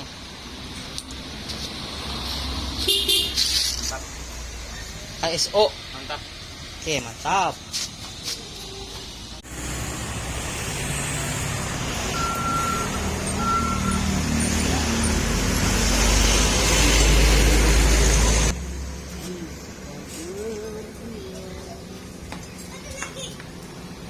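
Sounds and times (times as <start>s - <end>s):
vehicle engine rumble: 0.0s - 24.0s
short beeps: 12.1s - 14.0s.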